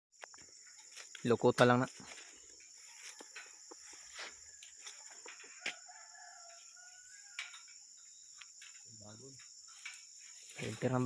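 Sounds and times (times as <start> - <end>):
insects chirring: 0.1 - 11.0
faint rooster crow: 2.8 - 8.2.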